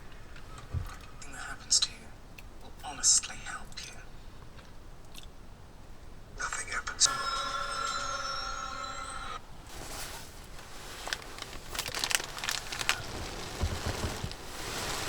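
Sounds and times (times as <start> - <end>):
fabric crinkling and rustling: 9.4 - 15.0.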